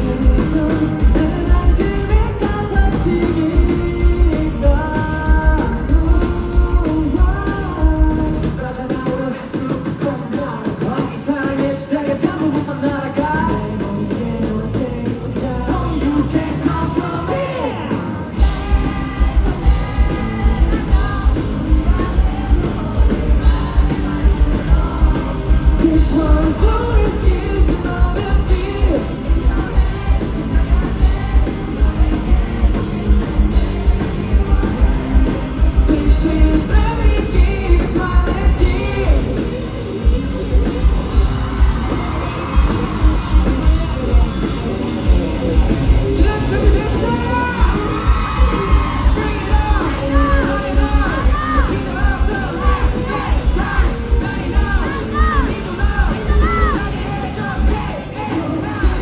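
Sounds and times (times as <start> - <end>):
heavy kick drum beat: 0.0 - 8.8, 18.4 - 58.0
person singing: 0.0 - 59.0
rock band playing: 0.0 - 59.0.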